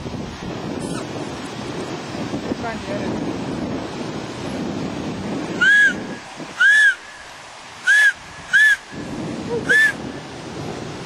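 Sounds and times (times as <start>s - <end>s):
wind noise: 0.0s - 11.0s
whistled notes: 5.6s - 7.2s, 7.8s - 8.8s.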